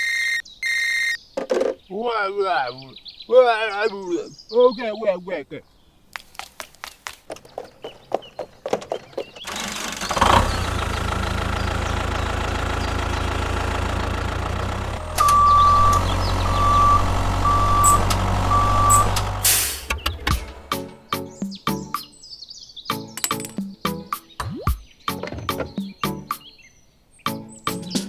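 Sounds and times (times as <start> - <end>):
reversing alarm beeping: 0.0 - 1.2, 14.8 - 20.0
truck engine running: 9.4 - 21.0
clicks and taps: 23.2 - 23.7.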